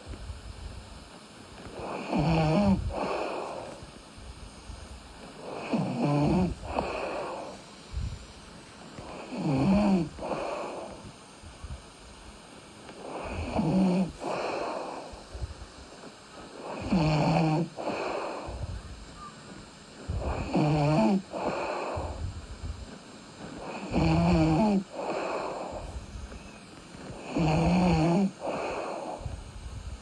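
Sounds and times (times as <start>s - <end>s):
person snoring: 1.6s - 3.9s, 5.2s - 8.3s, 9.0s - 11.1s, 12.9s - 15.5s, 16.5s - 19.0s, 20.1s - 22.4s, 23.4s - 29.9s.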